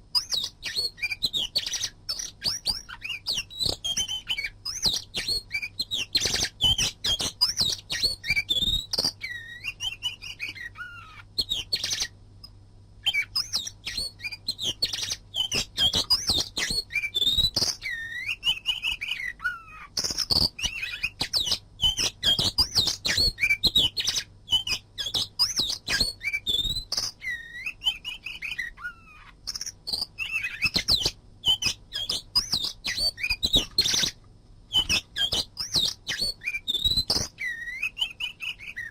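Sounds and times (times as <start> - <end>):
songbird whistles and chips: 13.0 - 38.9.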